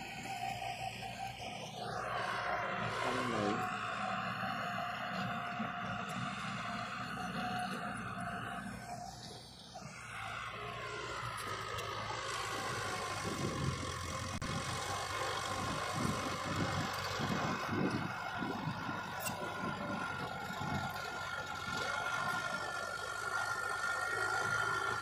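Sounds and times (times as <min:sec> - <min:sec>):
heavy machinery engine running: 0:00.0 - 0:25.0.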